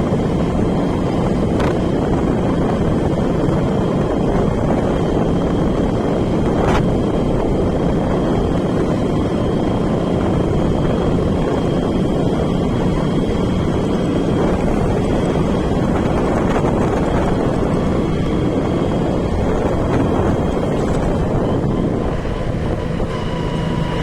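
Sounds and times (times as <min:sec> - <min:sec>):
vehicle moving: 0:00.0 - 0:24.0
wind buffeting microphone: 0:00.0 - 0:24.0
faint high whine: 0:16.0 - 0:24.0.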